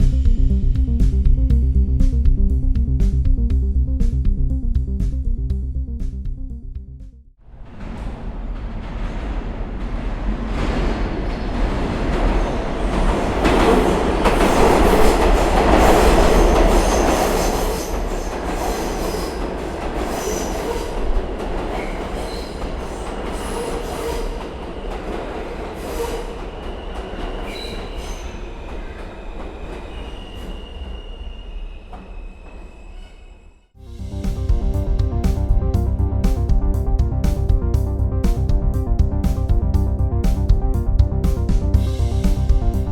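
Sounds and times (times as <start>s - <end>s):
subway train rumble and clatter: 7.4s - 42.9s
wheels and brakes squealing: 25.8s - 33.7s.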